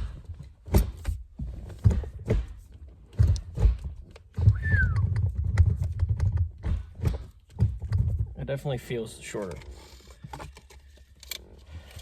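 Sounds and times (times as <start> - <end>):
shift lever knocks and clunks: 0.0 - 8.4
low rumbling of handling: 0.0 - 12.0.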